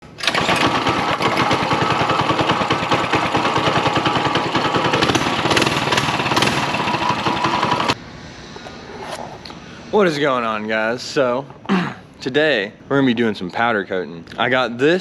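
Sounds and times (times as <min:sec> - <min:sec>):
small engine chugging: 0:00.2 - 0:08.0.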